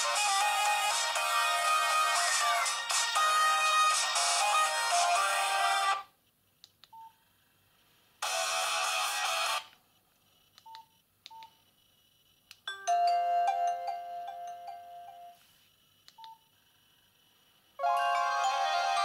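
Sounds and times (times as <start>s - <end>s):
phone ringtone melody: 0.0s - 6.0s, 12.7s - 15.4s, 17.8s - 19.0s.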